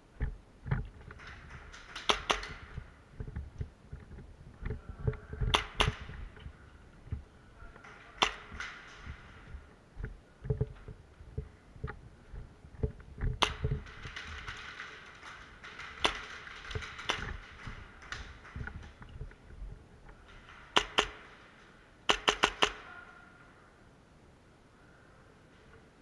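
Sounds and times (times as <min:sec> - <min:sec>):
airsoft gun shots: 0:08.2 - 0:09.4, 0:22.1 - 0:22.9.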